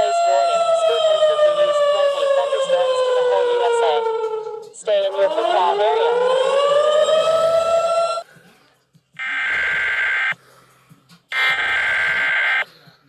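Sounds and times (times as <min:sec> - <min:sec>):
emergency siren rising in pitch: 0:00.0 - 0:08.2, 0:09.2 - 0:10.4, 0:11.3 - 0:12.6
electronic alarm buzzing: 0:09.2 - 0:10.4, 0:11.3 - 0:12.6.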